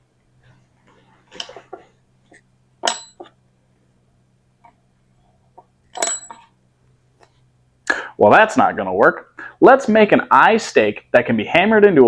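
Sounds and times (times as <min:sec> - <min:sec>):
low steady hum: 0:00.0 - 0:12.0
sharp metallic clang: 0:02.8 - 0:03.3, 0:05.9 - 0:06.5.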